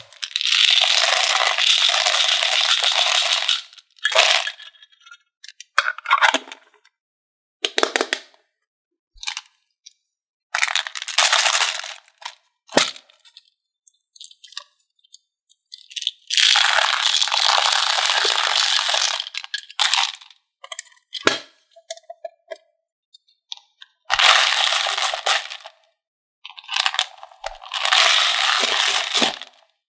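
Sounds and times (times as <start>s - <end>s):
candies clattering: 0.0s - 4.7s, 10.6s - 13.0s, 24.2s - 25.7s, 26.5s - 29.6s.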